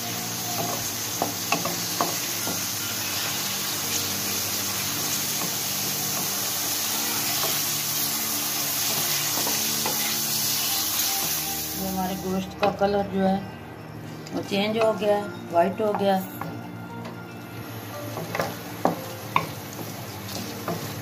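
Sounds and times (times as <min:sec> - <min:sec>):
meat sizzling in hot oil: 0:00.0 - 0:12.5, 0:17.5 - 0:21.0.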